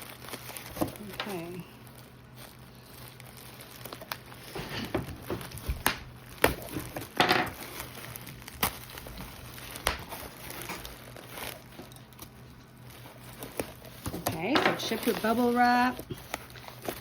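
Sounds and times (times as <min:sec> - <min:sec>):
bubble wrap crinkling: 0:00.0 - 0:17.0
sharp crackles and clicks: 0:05.4 - 0:17.0.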